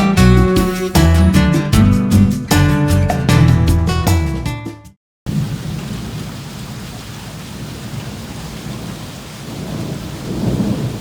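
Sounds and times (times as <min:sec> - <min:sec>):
background music: 0:00.0 - 0:04.9
heavy rain pouring: 0:05.3 - 0:11.0.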